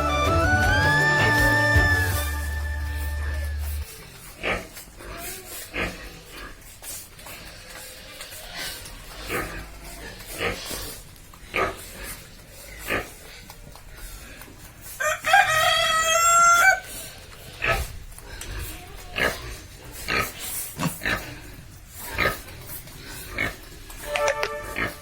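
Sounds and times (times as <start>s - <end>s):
pigs grunting: 2.8s - 25.0s
rooster crowing: 15.0s - 16.8s.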